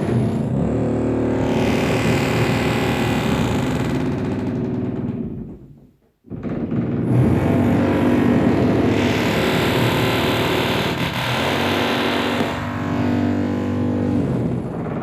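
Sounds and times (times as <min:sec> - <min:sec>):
power tool motor drone: 0:07.1 - 0:14.4.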